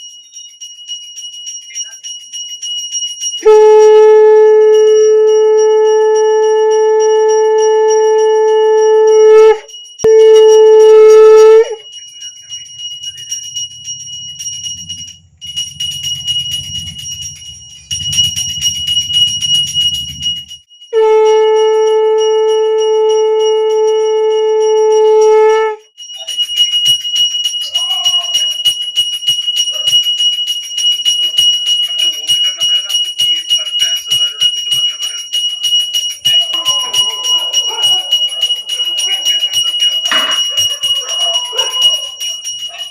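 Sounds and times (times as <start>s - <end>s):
hand bell ringing: 0.0s - 42.9s
conch shell blasts: 3.4s - 11.8s, 15.8s - 25.8s, 40.0s - 40.6s.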